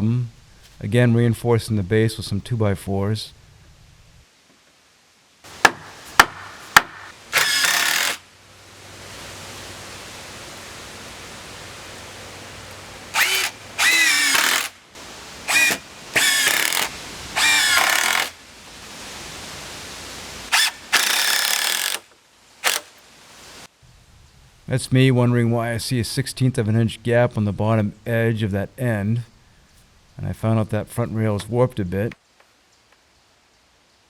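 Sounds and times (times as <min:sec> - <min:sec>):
impact driver sinking screws: 0:06.1 - 0:08.2, 0:13.2 - 0:14.8, 0:15.5 - 0:18.4, 0:20.5 - 0:22.9.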